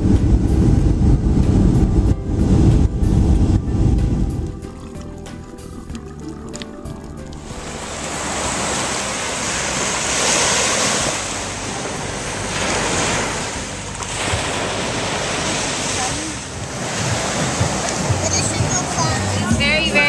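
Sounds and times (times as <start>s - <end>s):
wind buffeting microphone: 0.0s - 20.0s
surf breaking on a beach: 7.4s - 20.0s.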